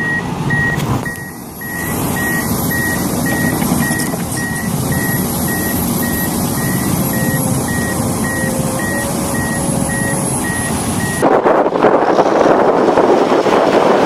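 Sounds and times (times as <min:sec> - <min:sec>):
backup alarm beeping: 0:00.0 - 0:11.2
diesel engine running: 0:00.0 - 0:14.0
loud rushing noise: 0:00.3 - 0:14.0.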